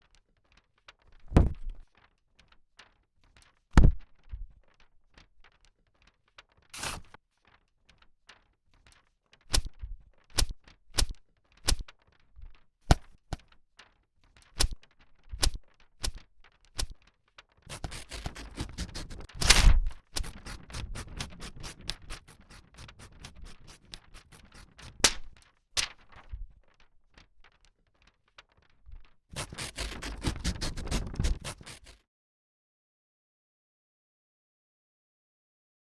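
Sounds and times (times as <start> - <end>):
paper crinkling and rustling: 0.0 - 32.0
paper snapping: 6.7 - 7.2, 10.4 - 11.9, 12.9 - 13.6, 14.4 - 14.8, 15.4 - 17.0, 17.7 - 26.4, 29.4 - 32.0.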